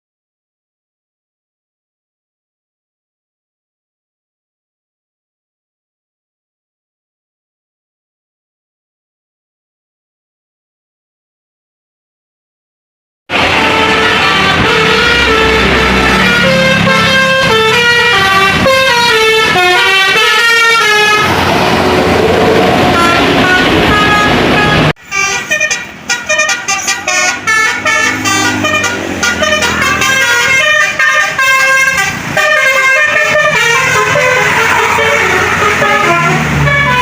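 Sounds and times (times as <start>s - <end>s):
musical bus horn playing a tune: 13.3s - 37.0s.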